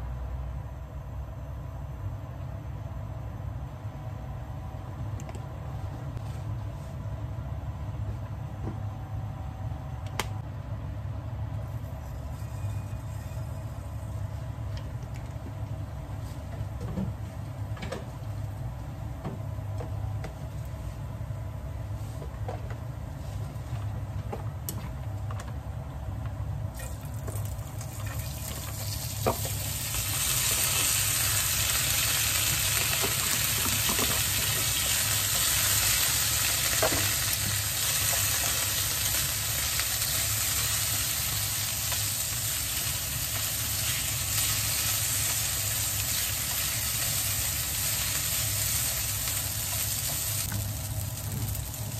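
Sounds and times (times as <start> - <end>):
low steady hum: 0.0 - 51.9
food sizzling in a frying pan: 26.8 - 51.9.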